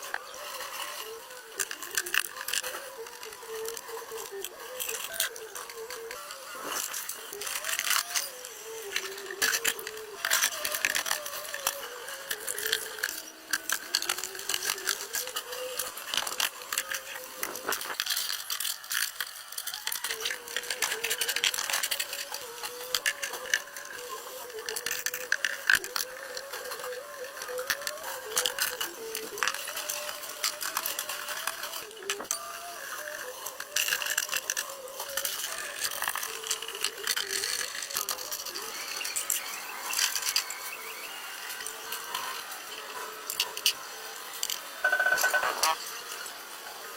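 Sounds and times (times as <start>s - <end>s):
metallic clicking and rattling of tools: 6.8s - 23.6s
faint wavering tone: 44.8s - 45.8s.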